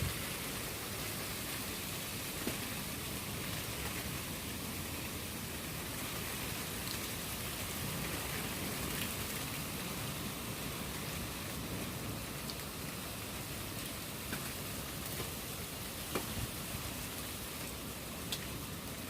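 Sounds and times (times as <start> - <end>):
steady rain falling: 0.0 - 19.0
raindrop ticks: 6.8 - 7.1, 13.8 - 15.4, 18.2 - 18.6.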